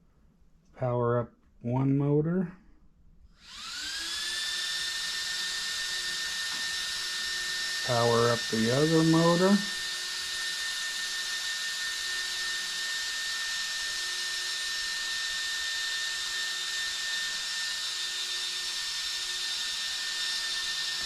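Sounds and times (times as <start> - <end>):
high electric whine: 5.2 - 10.2.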